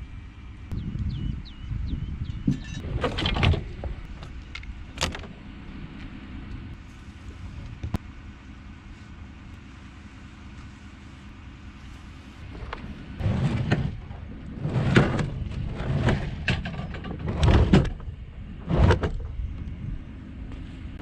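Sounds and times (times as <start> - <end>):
knocks and bumps of gear: 2.3 - 6.6, 12.4 - 19.8.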